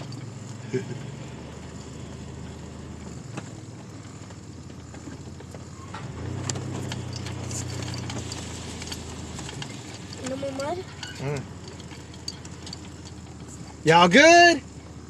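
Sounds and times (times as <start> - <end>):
truck engine running: 0.0 - 15.0
truck knocks and rattles: 0.0 - 15.0.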